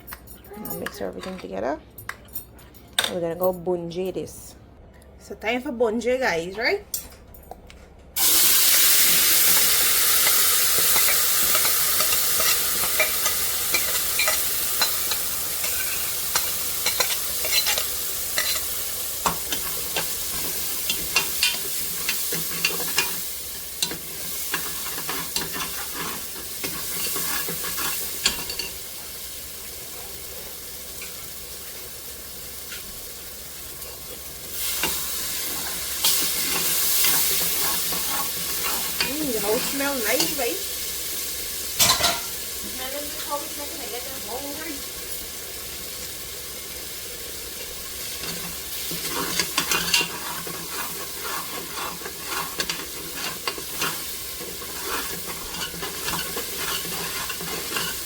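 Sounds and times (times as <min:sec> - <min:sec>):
seasoning sizzling in hot oil: 0:08.2 - 0:58.0
spoon scraping pot: 0:09.5 - 0:28.8, 0:34.7 - 0:40.4, 0:48.1 - 0:58.0.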